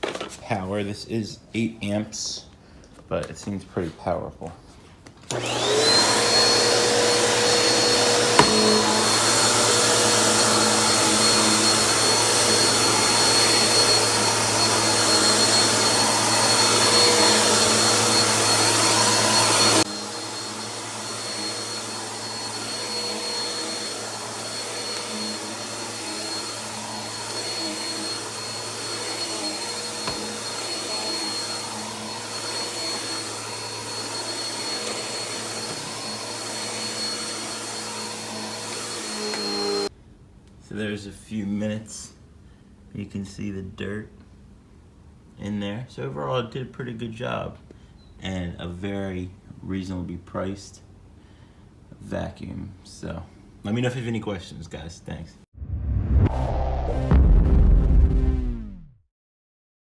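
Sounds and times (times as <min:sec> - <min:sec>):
vacuum cleaner motor whine: 0:05.3 - 0:39.9.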